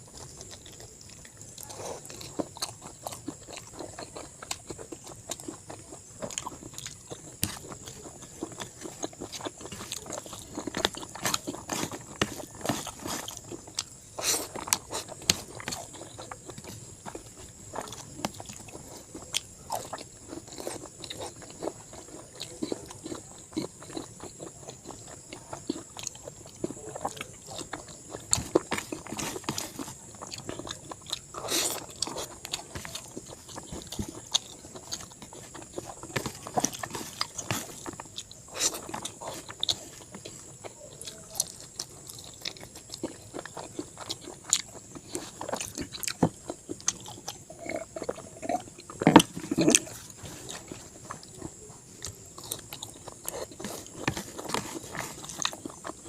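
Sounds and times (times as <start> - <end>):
chewing and biting food: 0.0 - 56.0.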